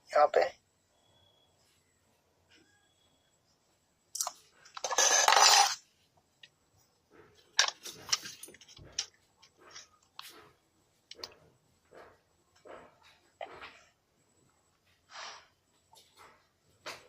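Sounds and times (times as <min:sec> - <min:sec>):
tools clinking and knocking: 0:04.2 - 0:05.8, 0:07.4 - 0:10.4.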